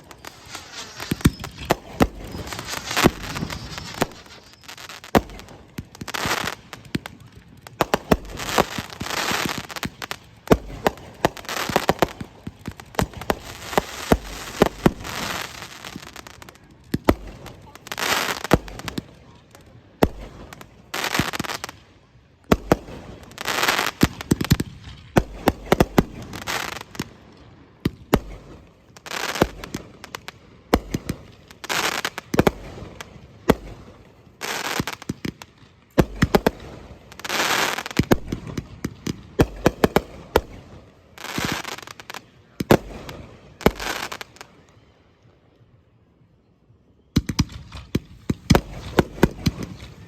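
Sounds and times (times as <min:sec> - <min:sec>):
hissing crackling firework burst: 0:00.0 - 0:19.2, 0:36.0 - 0:44.6
fireworks bursting bangs: 0:00.0 - 0:44.6, 0:47.2 - 0:50.0.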